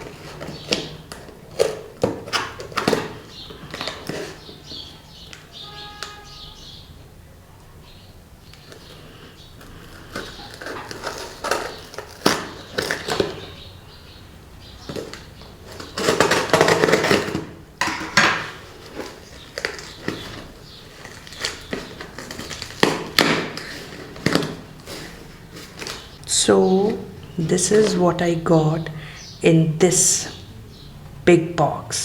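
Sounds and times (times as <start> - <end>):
cardboard box and paper rustling: 0.0 - 5.0, 9.7 - 13.6, 14.8 - 26.2.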